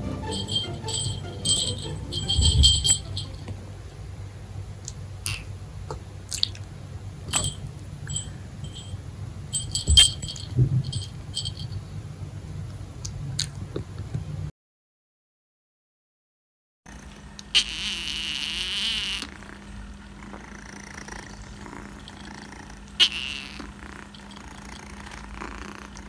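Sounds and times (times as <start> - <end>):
low steady hum: 0.0 - 14.5
light jingles: 0.3 - 3.4, 7.3 - 9.0, 9.6 - 11.8.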